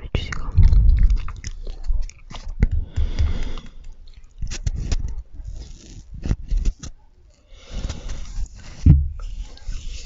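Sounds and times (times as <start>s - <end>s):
lip and tongue clicks: 0.1s - 7.0s
marshmallows being chewed: 0.1s - 10.0s.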